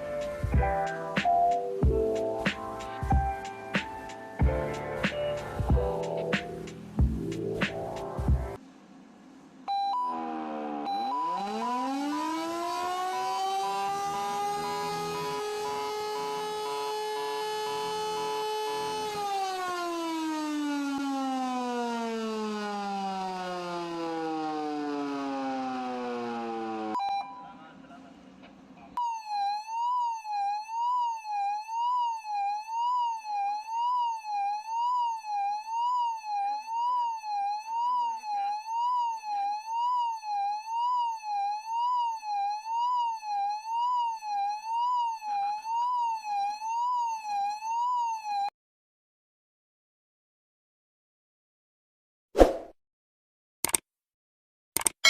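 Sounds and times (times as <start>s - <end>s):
siren falling in pitch: 9.7s - 27.3s, 29.0s - 48.5s
siren fast up-and-down sweep: 9.7s - 27.3s, 29.0s - 48.5s.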